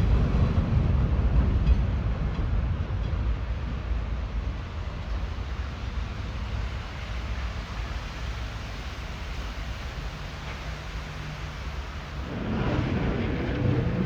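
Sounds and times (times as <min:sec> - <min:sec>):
subway train rumble: 0:00.0 - 0:14.0
wind noise: 0:12.1 - 0:14.0.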